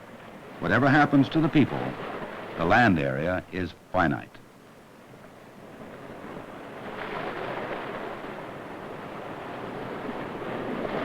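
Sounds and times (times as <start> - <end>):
ocean waves washing ashore: 0.0 - 11.0.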